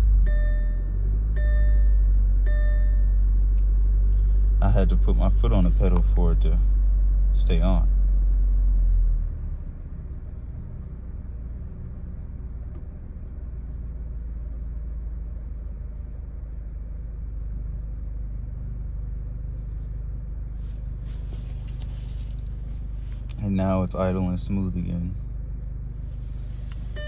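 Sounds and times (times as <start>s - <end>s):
car engine idling: 0.0s - 8.6s, 20.4s - 27.0s.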